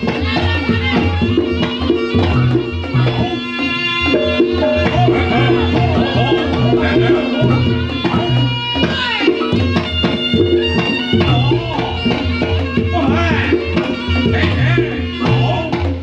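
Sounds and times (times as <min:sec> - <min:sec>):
steady drum rhythm: 0:00.0 - 0:16.0
wavering high melody: 0:00.0 - 0:16.0.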